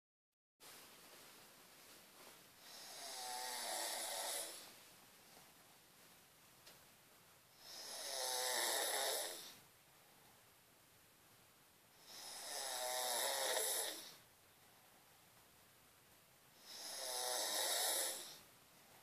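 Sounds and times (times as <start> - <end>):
woman snoring: 2.6 - 4.7, 7.6 - 9.6, 12.0 - 14.2, 16.6 - 18.4.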